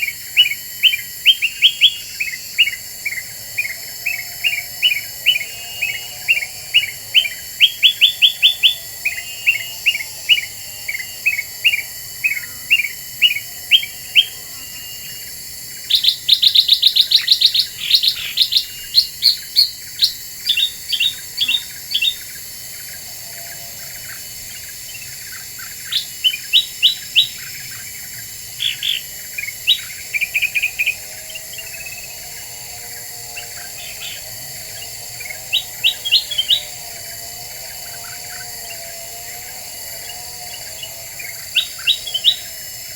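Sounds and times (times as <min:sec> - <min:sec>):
bird chirping: 0:16.0 - 0:22.3.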